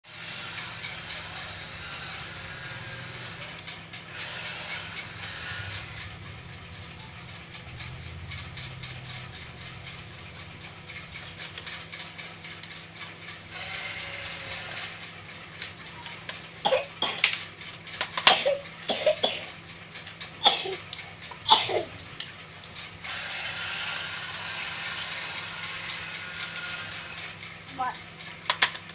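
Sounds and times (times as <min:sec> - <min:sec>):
toy gear mechanism clicking: 0:00.0 - 0:28.9
child coughing: 0:16.6 - 0:17.4, 0:18.2 - 0:19.6, 0:20.4 - 0:20.8, 0:21.5 - 0:22.0.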